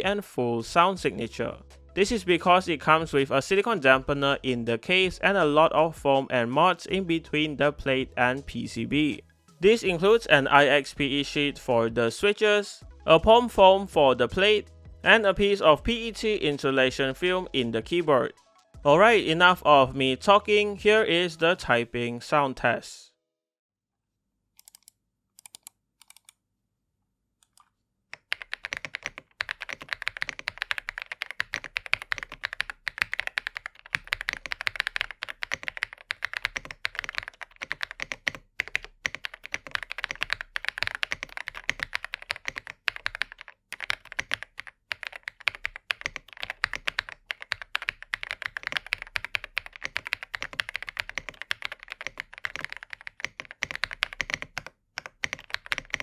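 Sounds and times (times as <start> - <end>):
mechanical keyboard typing: 24.6 - 26.3, 28.2 - 56.0.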